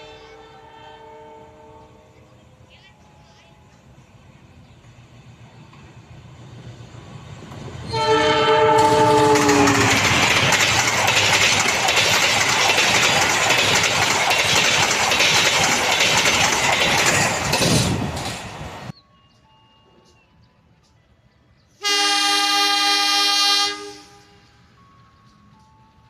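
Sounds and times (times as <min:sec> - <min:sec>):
diesel locomotive horn: 0:00.0 - 0:02.2, 0:07.8 - 0:10.1, 0:21.8 - 0:24.8
train passing with rail clatter: 0:00.0 - 0:26.0.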